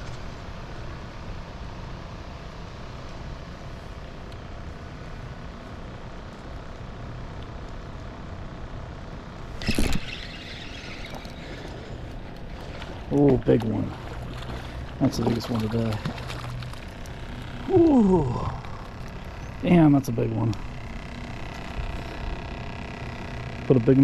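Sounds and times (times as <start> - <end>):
low outdoor rumble: 0.0 - 24.0.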